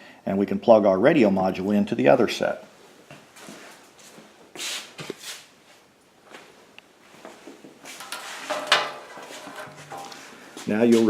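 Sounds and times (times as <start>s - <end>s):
wiring rustling: 7.1s - 11.0s.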